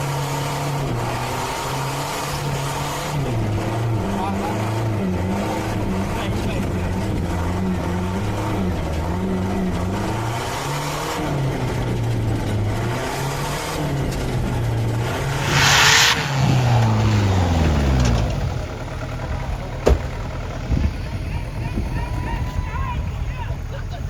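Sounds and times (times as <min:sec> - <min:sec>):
off-road engine revving: 0:00.0 - 0:24.0
loud rushing burst: 0:15.0 - 0:19.2.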